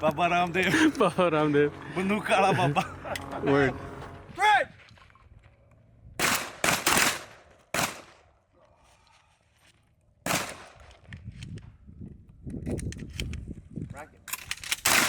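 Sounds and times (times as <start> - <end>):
shotgun shots: 6.2 - 8.2, 10.3 - 10.9.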